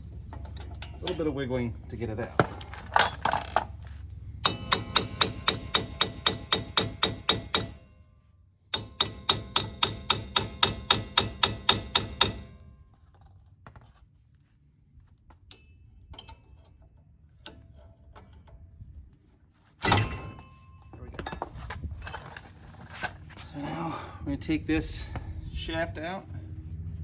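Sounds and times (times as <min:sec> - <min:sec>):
hammer striking metal axle: 0:04.4 - 0:08.0, 0:08.7 - 0:12.9, 0:15.4 - 0:18.5, 0:19.8 - 0:20.9.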